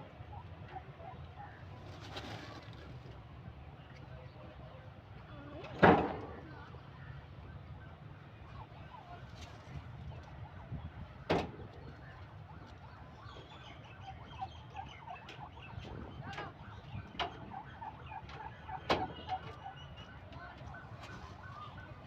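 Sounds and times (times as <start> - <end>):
birds chirping: 12.8 - 20.8.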